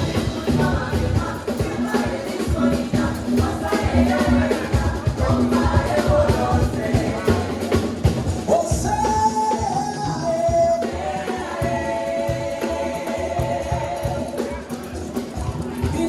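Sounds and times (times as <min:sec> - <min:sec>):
gospel band playing: 0:00.0 - 0:16.0.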